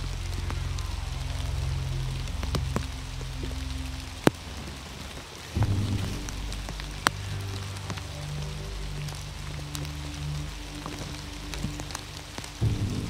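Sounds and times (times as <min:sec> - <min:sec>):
background music with bass line: 0:00.0 - 0:13.0
rain falling: 0:00.0 - 0:13.0.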